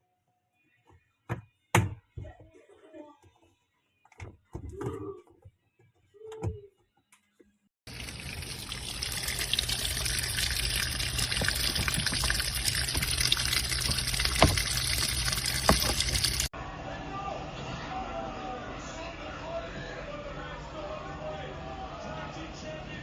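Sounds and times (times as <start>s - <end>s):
water pouring into washing machine: 7.9s - 16.5s.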